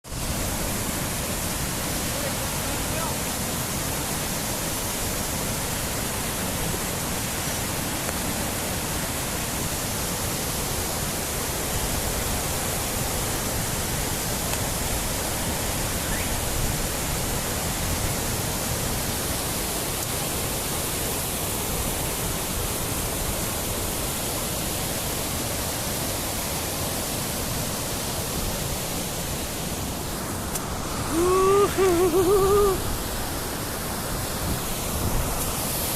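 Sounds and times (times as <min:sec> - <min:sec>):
river water rushing: 0:00.0 - 0:35.9.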